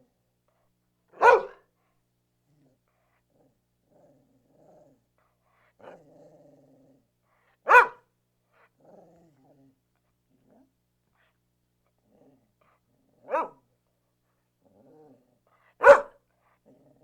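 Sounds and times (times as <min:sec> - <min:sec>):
dog barking: 0:01.2 - 0:01.6, 0:07.7 - 0:08.0, 0:13.3 - 0:13.6, 0:15.8 - 0:16.2.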